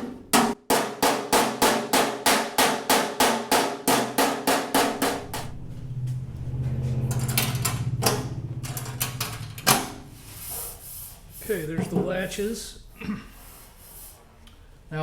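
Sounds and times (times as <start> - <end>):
hammer striking sheet metal: 0.0 - 10.8
steady motor hum: 4.8 - 10.8.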